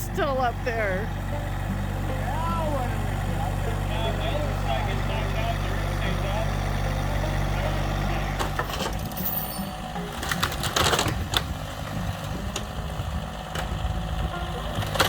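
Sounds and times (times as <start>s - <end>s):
motor running unevenly: 0.0s - 15.0s
rapid clattering: 8.4s - 12.8s.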